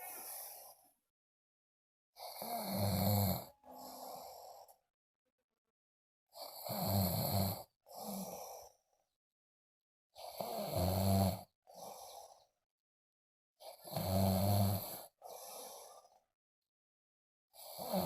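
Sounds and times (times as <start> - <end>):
quiet breath: 0.0 - 1.0, 3.4 - 4.9, 7.9 - 9.2, 11.7 - 12.6, 14.9 - 16.3
person snoring: 2.2 - 4.7, 10.2 - 11.9, 17.6 - 18.0.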